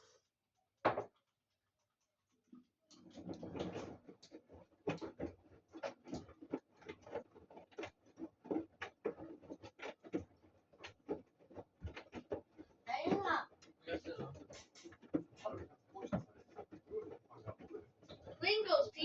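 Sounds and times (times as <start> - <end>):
irregular taps and knocks: 0.8 - 18.8.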